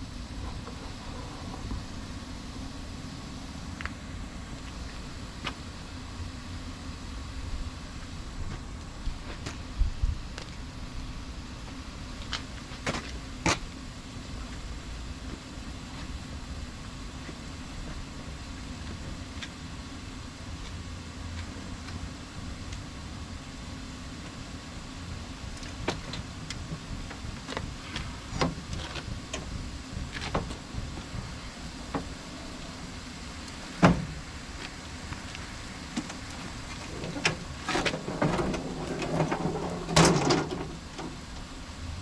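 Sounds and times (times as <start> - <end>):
knocks and clanks: 33.8 - 34.2, 36.0 - 41.3.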